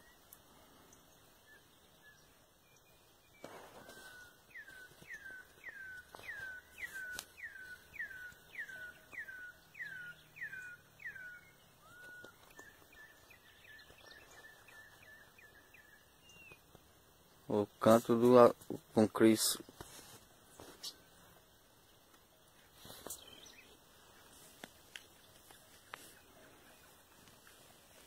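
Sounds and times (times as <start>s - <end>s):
brief rustle: 19.7s - 21.1s, 22.7s - 23.4s.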